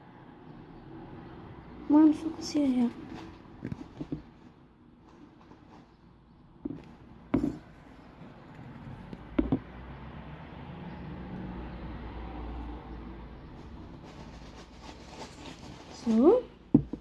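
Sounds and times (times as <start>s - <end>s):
sharp knocks on table: 6.6s - 7.6s, 9.4s - 9.6s, 16.7s - 17.0s.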